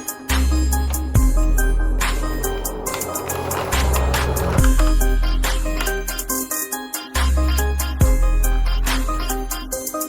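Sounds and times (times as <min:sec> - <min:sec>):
music with heavy bass and beat: 0:00.3 - 0:10.0.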